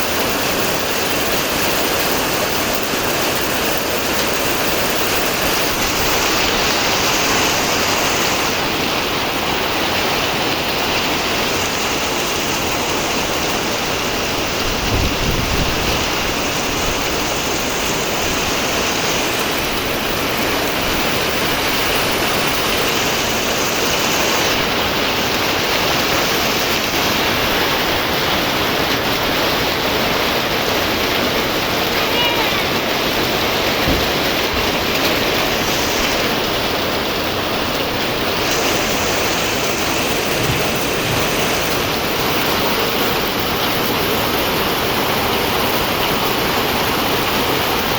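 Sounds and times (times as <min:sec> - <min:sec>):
heavy rain falling: 0:00.0 - 0:47.9
low thump: 0:33.8 - 0:34.7.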